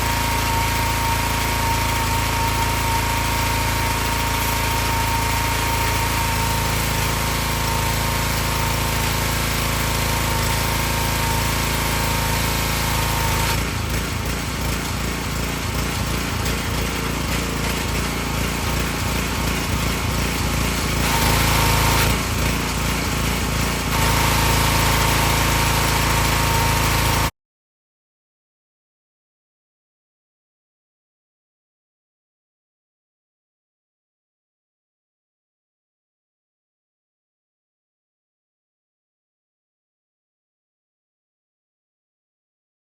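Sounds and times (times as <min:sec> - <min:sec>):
pressure washer engine running: 0:00.0 - 0:27.3.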